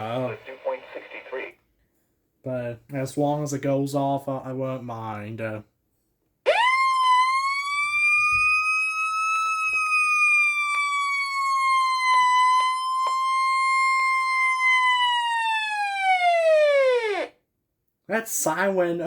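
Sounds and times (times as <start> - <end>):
weather radio siren wail: 6.5 - 17.3.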